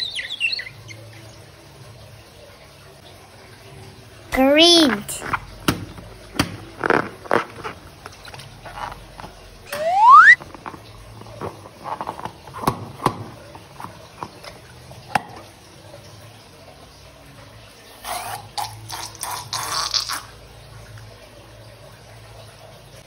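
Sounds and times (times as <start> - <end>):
slime squelching: 4.8 - 12.7.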